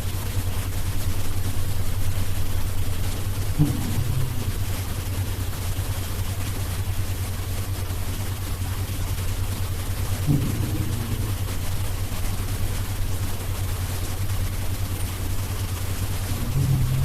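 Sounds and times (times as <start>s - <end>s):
snoring low rumble: 3.4s - 5.6s, 10.1s - 13.0s, 16.1s - 17.0s
short pitched snort: 3.6s - 4.8s, 10.2s - 11.6s, 16.3s - 17.0s.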